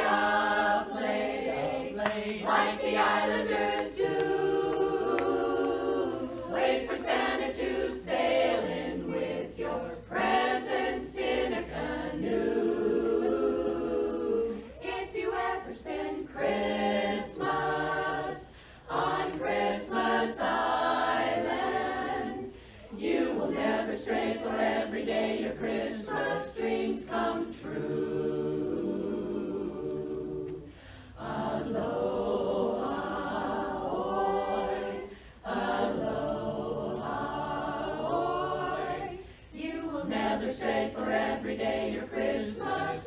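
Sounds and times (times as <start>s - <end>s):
women's chorus singing a cappella: 0.0s - 43.0s.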